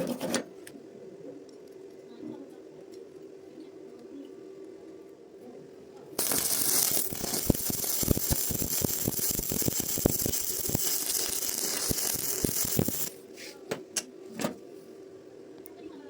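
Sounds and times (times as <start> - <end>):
welding arc hissing and crackling: 6.2 - 13.2.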